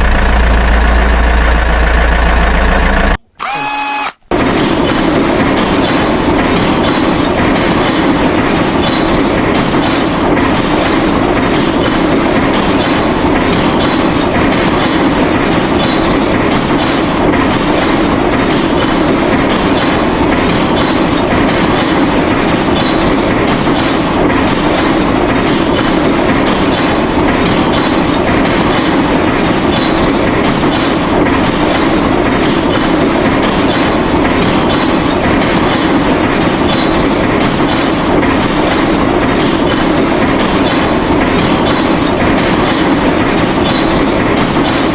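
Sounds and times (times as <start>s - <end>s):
pressure washer pump running: 0.0s - 4.6s.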